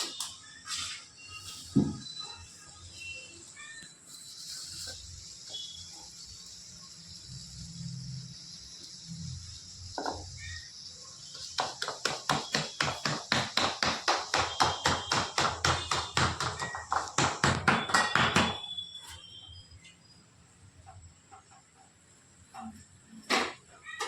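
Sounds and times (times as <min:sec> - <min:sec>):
rapid even knocking: 0:11.6 - 0:18.6.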